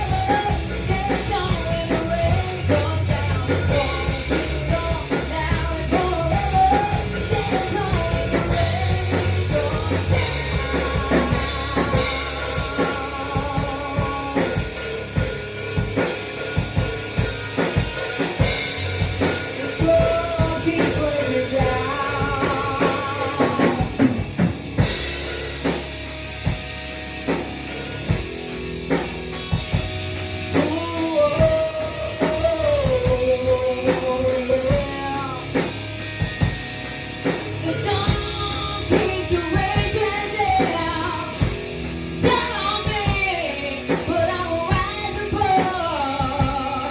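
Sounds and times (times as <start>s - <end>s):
person singing: 0.0s - 15.4s, 19.2s - 24.2s, 30.6s - 35.6s, 37.7s - 41.5s, 42.2s - 46.9s
bass: 0.0s - 46.9s
drum kit: 0.0s - 46.9s
guitar: 0.0s - 46.9s.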